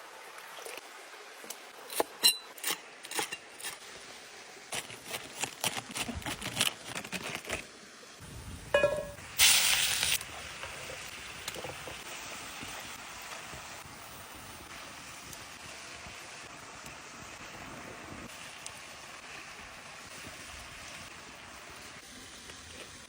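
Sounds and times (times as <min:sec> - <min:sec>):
short loud hiss: 0:09.1 - 0:10.2.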